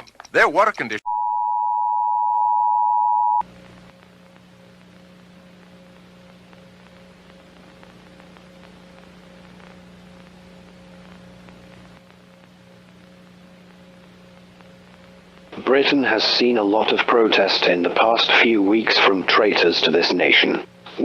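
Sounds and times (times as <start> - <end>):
low electrical hum: 0.0 - 21.0
loud two-tone beep: 1.1 - 3.4.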